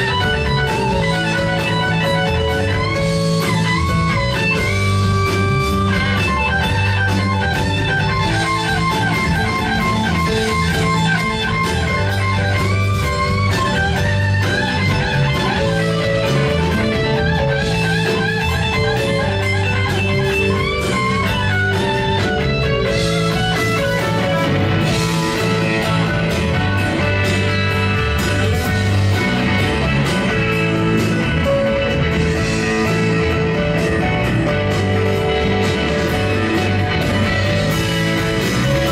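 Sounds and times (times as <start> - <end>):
bass guitar: 0.0 - 38.9
drums: 0.0 - 38.9
electric guitar lead line: 0.0 - 38.9.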